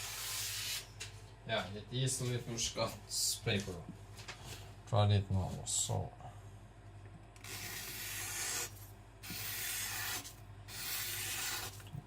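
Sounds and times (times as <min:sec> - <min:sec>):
cleaver slicing paper: 0:07.4 - 0:12.0.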